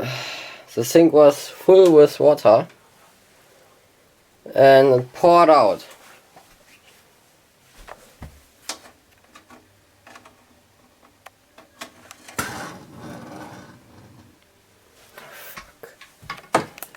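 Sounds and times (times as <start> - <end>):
rustling scrape: 12.2 - 14.4.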